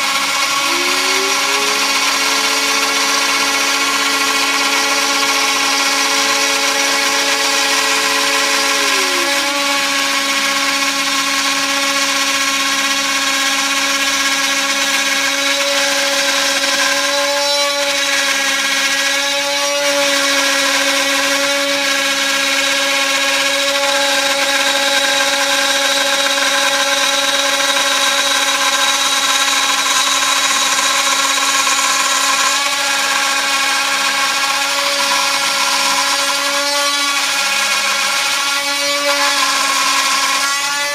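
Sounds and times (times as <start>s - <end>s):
bit cutting wood: 0.0s - 40.9s
router spindle whine: 0.0s - 40.9s.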